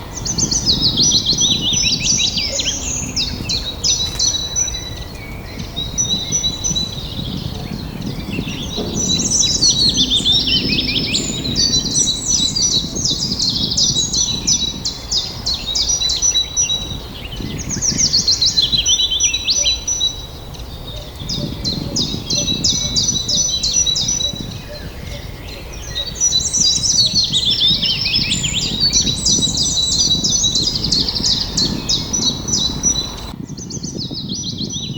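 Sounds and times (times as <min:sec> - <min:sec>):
low background rumble: 0:00.0 - 0:15.2
songbirds chirping and trilling: 0:00.0 - 0:34.9.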